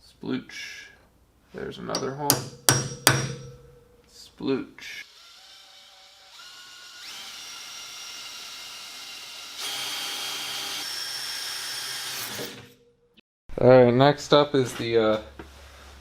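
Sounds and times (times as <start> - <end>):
electric drill motor whine: 5.1 - 12.6.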